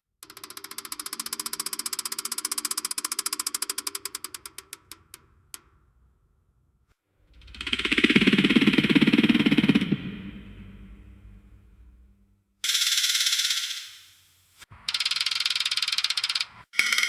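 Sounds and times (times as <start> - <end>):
loud noisy sound: 7.4 - 12.1.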